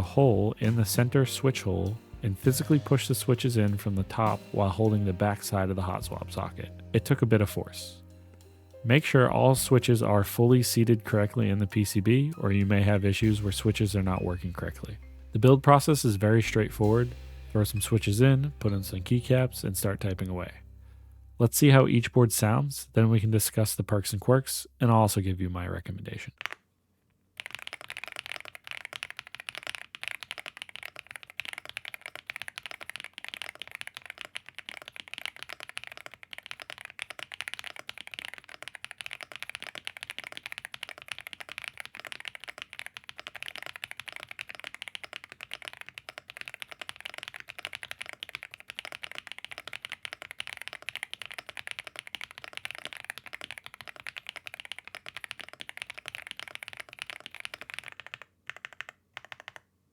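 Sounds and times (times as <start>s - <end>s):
mechanical keyboard fast typing: 26.3s - 26.6s, 27.4s - 59.7s.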